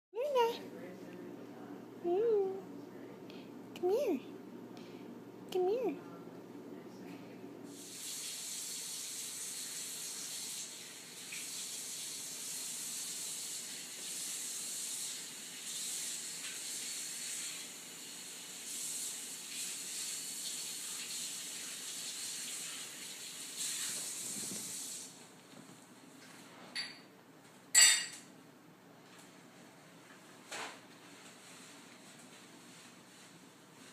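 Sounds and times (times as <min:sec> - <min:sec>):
steady hiss: 0:07.7 - 0:25.4.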